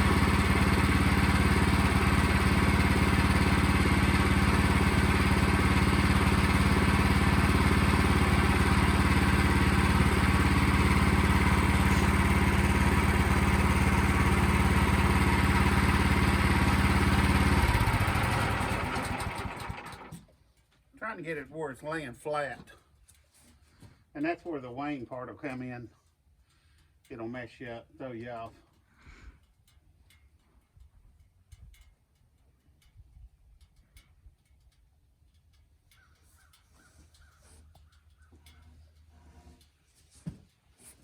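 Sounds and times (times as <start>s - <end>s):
engine running and winding down: 0.0s - 20.2s.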